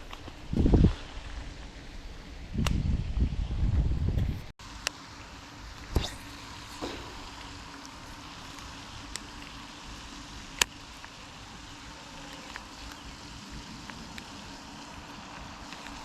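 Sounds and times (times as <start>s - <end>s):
fountain splashing: 4.6s - 16.0s.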